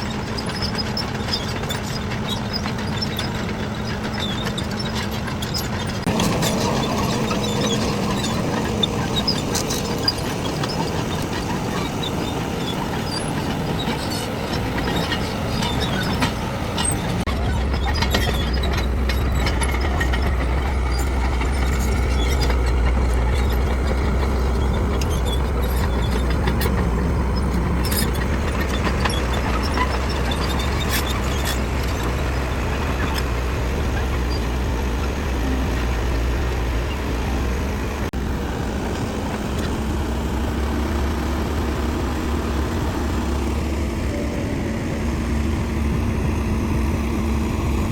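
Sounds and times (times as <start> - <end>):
deep diesel engine drone: 0.0 - 47.9.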